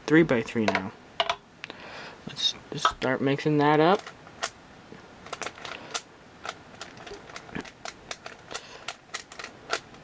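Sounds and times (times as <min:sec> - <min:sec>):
plastic puzzle cube clicking: 0:03.9 - 0:04.6, 0:05.2 - 0:10.0.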